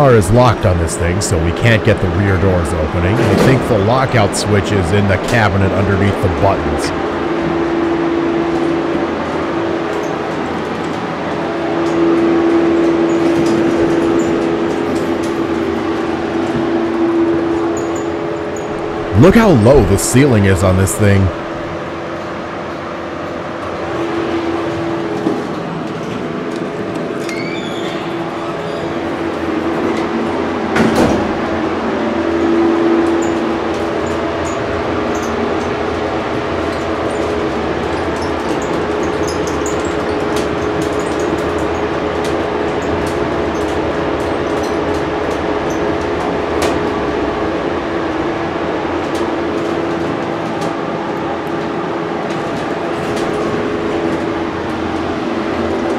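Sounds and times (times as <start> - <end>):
ventilation fan whirring: 0.0 - 55.9
elevator clunk: 1.6 - 7.5.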